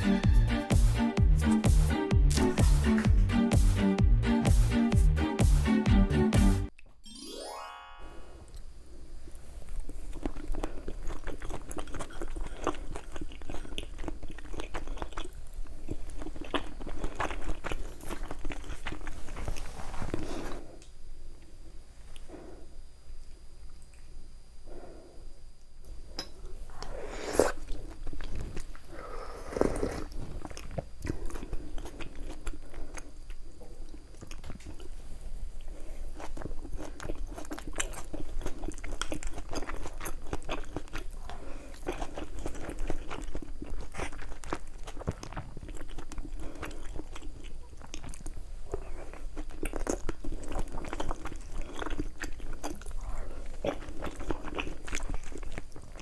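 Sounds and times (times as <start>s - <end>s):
food being chewed and crunched: 9.6s - 20.4s, 26.2s - 56.0s
slurps: 26.8s - 30.7s.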